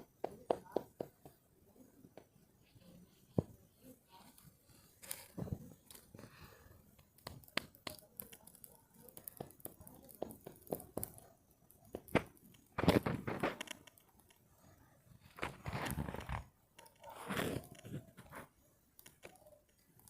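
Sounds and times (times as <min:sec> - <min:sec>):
campfire crackling: 0:00.0 - 0:20.0
crunching or rustling: 0:07.2 - 0:14.4, 0:15.2 - 0:19.5.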